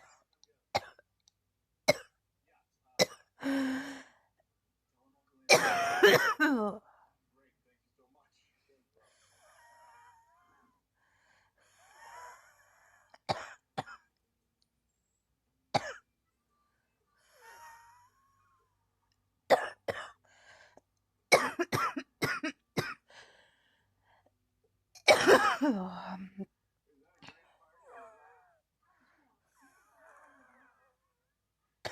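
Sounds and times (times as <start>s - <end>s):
faint breaths: 3.4s - 4.5s, 6.8s - 13.3s, 20.2s - 21.0s, 23.0s - 24.8s, 26.9s - 31.2s
person coughing: 5.5s - 6.8s, 21.3s - 23.1s, 25.0s - 26.1s.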